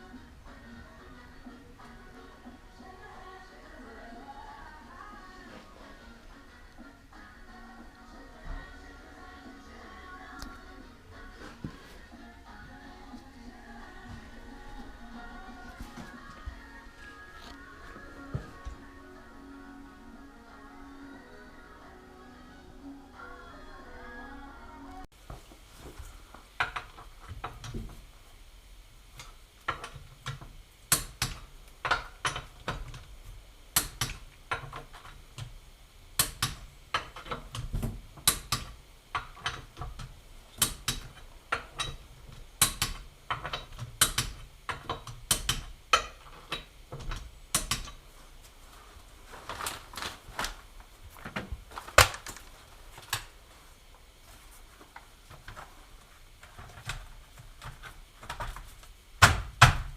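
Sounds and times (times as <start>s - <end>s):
sharp clicks and knocks: 42.6s - 48.0s.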